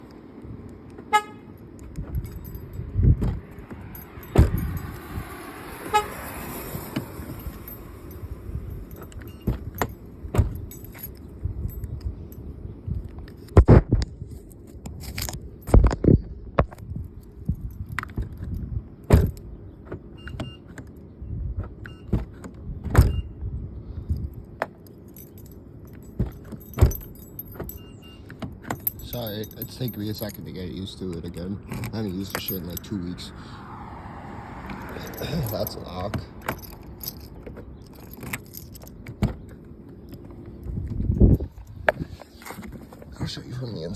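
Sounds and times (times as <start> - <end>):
keys jangling: 1.9 - 12.5, 14.3 - 15.8, 17.0 - 19.4, 24.2 - 33.2, 34.7 - 43.8
car door lock clicks and thumps: 3.2 - 4.9, 18.0 - 20.9, 21.6 - 23.2, 39.0 - 39.5.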